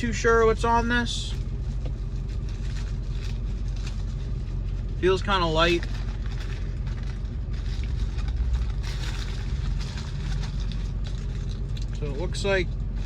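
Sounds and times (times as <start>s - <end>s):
steady low hum: 0.0s - 13.0s
paper wrapper crinkling: 1.5s - 12.0s.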